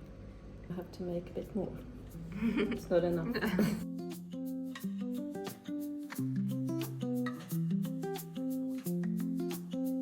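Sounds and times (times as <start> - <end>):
plucked guitar-like instrumental music: 3.5 - 10.0.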